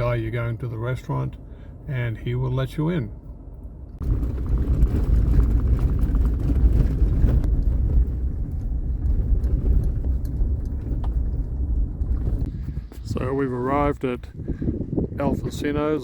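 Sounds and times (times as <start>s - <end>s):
vehicle driving rumble: 0.0s - 16.0s
knocks and rattles: 4.0s - 12.5s.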